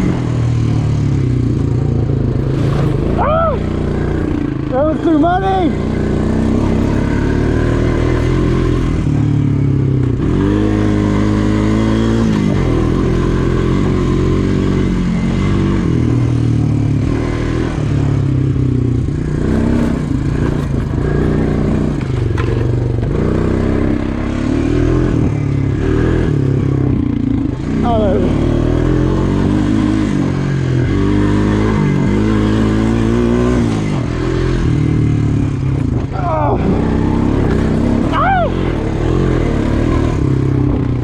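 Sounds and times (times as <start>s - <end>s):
atv engine revving: 0.0s - 41.0s.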